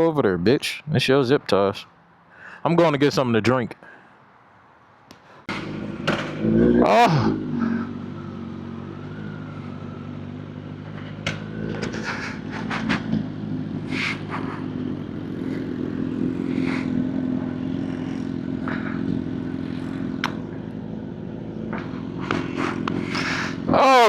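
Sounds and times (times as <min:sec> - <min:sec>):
motorcycle engine idling: 0:05.5 - 0:24.0.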